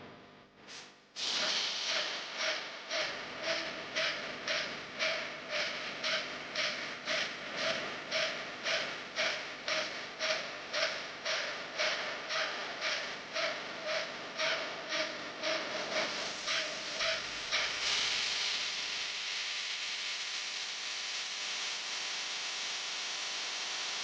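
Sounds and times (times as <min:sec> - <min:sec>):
rhythmic rasping scraping strokes: 0:01.9 - 0:17.8.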